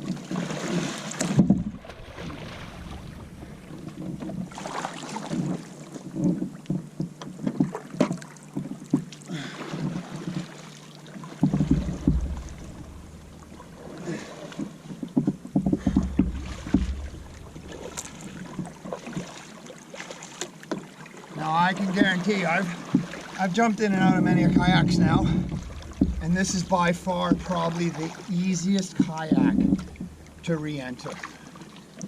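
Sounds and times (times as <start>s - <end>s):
water splashing and sloshing: 0.0s - 32.0s
knocks against plastic hull: 1.2s - 4.5s, 11.4s - 13.8s, 14.6s - 18.8s, 22.9s - 23.2s, 24.0s - 27.7s, 29.0s - 30.2s
wind rumble on microphone: 1.3s - 4.5s, 24.0s - 27.6s.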